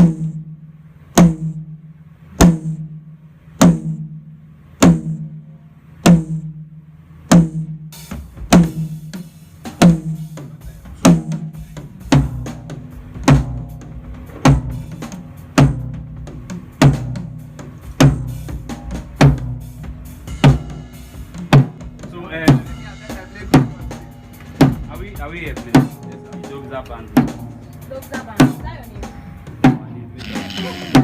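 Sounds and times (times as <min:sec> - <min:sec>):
faint busy background layer: 0:22.1 - 0:31.0
single drum hits ringing low: 0:23.5 - 0:31.0.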